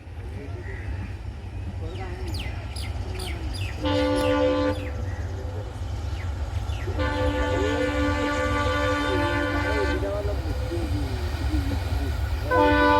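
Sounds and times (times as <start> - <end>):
diesel locomotive horn: 3.7 - 5.0, 6.9 - 10.3, 12.5 - 12.9.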